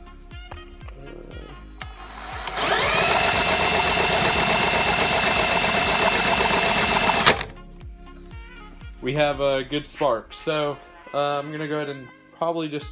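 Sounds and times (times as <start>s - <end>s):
power drill spinning: 1.8s - 7.6s.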